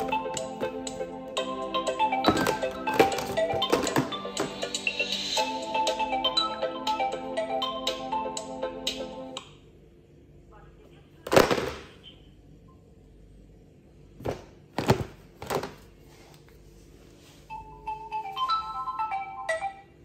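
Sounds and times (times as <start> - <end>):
phone ringtone marimba notes: 17.5 - 20.0.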